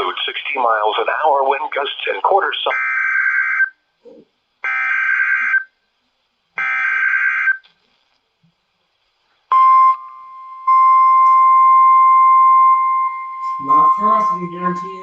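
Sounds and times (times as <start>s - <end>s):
steady warning alarm tone: 2.7s - 3.7s, 4.6s - 5.7s, 6.6s - 7.6s, 9.5s - 15.0s.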